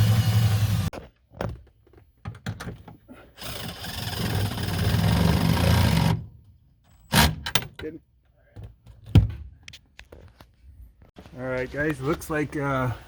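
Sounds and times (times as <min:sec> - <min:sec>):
electric power tool running: 0:00.0 - 0:00.9.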